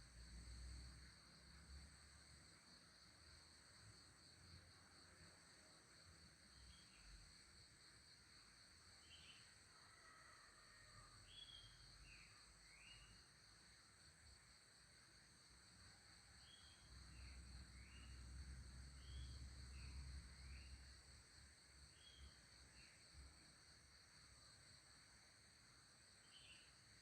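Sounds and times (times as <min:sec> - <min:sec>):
high-pitched insect chorus: 0:00.0 - 0:27.0
short insect chirps: 0:09.0 - 0:09.5, 0:11.3 - 0:13.2, 0:16.4 - 0:20.9, 0:21.9 - 0:23.0, 0:26.2 - 0:26.8.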